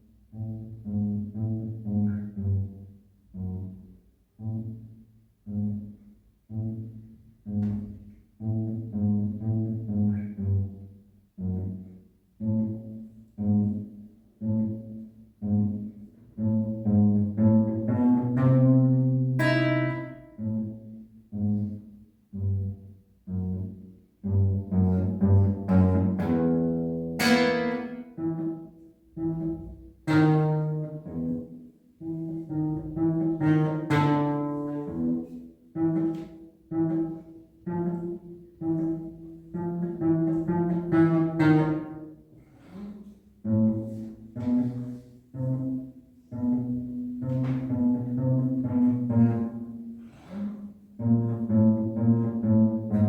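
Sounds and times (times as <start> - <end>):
cello playing slow piece: 0.0 - 53.0.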